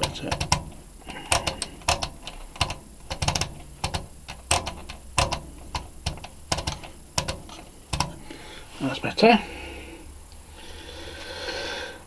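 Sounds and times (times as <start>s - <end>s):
mechanical control clicks: 0.0s - 8.2s.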